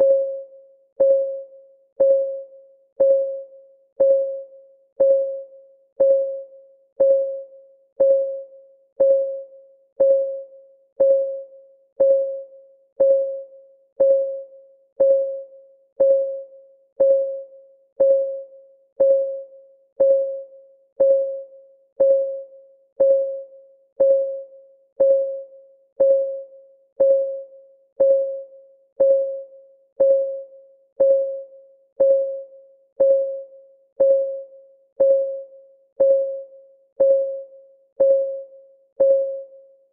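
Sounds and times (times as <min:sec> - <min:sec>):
timer ticking: 0:01.0 - 0:01.4, 0:02.0 - 0:02.4, 0:03.0 - 0:03.4, 0:04.0 - 0:04.4, 0:05.0 - 0:05.4, 0:06.0 - 0:06.4, 0:07.0 - 0:07.4, 0:08.0 - 0:08.4, 0:09.0 - 0:09.4, 0:10.0 - 0:10.4, 0:11.0 - 0:11.4, 0:12.0 - 0:12.4, 0:13.0 - 0:13.4, 0:14.0 - 0:14.4, 0:15.0 - 0:15.4, 0:16.0 - 0:16.4, 0:17.0 - 0:17.4, 0:18.0 - 0:18.4, 0:19.0 - 0:19.4, 0:20.0 - 0:20.4, 0:21.0 - 0:21.4, 0:22.0 - 0:22.4, 0:23.0 - 0:23.4, 0:24.0 - 0:24.4, 0:25.0 - 0:25.4, 0:26.0 - 0:26.4, 0:27.0 - 0:27.4, 0:28.0 - 0:28.4, 0:29.0 - 0:29.4, 0:30.0 - 0:30.4, 0:31.0 - 0:31.4, 0:32.0 - 0:32.4, 0:33.0 - 0:33.4, 0:34.0 - 0:34.4, 0:35.0 - 0:35.4, 0:36.0 - 0:36.4, 0:37.0 - 0:38.4.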